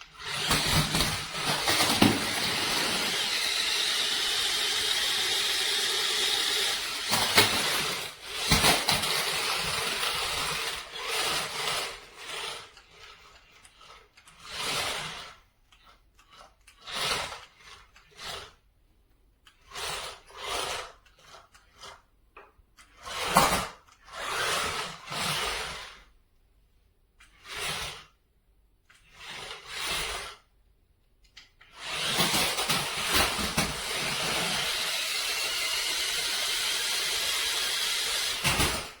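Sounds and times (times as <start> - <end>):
rc car electric motor whirring: 0.1 - 18.6, 31.6 - 39.0.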